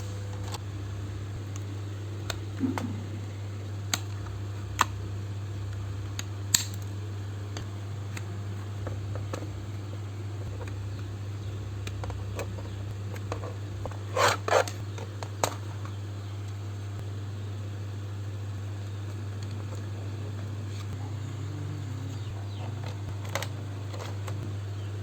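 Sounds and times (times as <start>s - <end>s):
steady low hum: 0.0s - 25.0s
small hard parts clicking: 22.0s - 24.5s.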